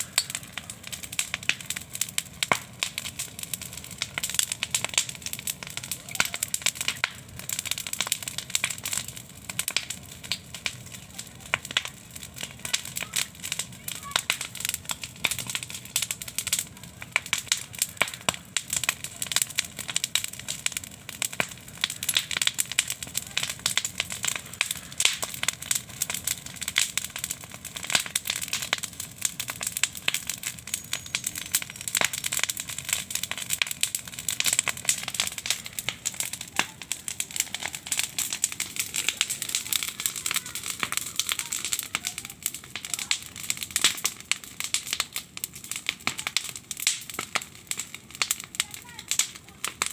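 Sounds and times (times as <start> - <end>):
wood fire crackling: 0.0 - 49.9.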